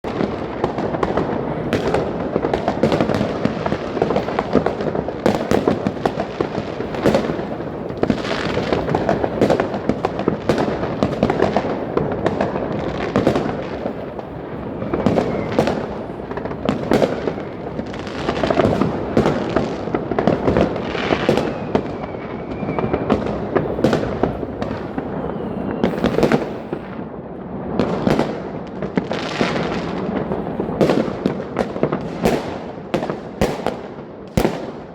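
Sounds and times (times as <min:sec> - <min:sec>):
fireworks and firecrackers banging: 0:00.0 - 0:34.9
firework whistle: 0:00.1 - 0:27.1.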